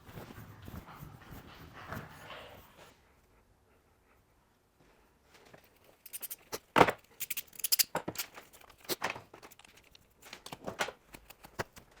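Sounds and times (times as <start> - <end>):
objects being handled: 5.4 - 12.0.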